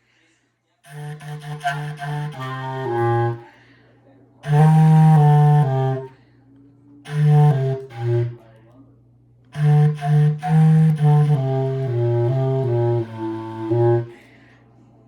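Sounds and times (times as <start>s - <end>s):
solo wind instrument: 0.9s - 3.6s, 4.4s - 6.2s, 7.1s - 8.5s, 9.5s - 14.3s.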